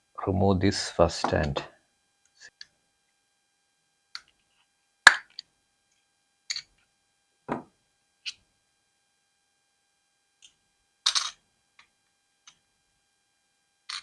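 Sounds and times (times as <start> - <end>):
dull knock: 7.5 - 7.7.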